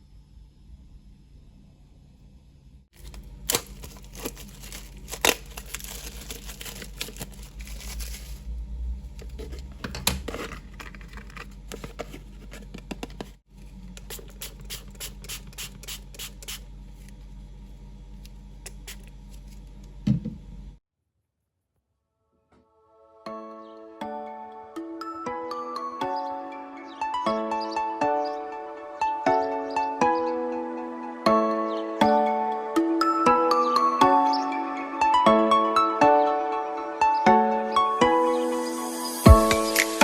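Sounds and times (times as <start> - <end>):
scratchy scraping and rustling: 3.0 - 8.5, 9.1 - 16.2.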